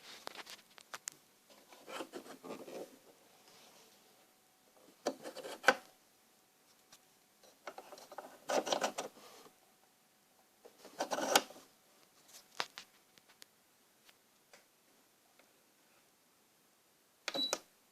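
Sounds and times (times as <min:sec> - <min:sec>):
handling rubbing and scraping: 0:00.0 - 0:04.1, 0:04.8 - 0:05.9, 0:06.7 - 0:09.5, 0:10.7 - 0:13.0.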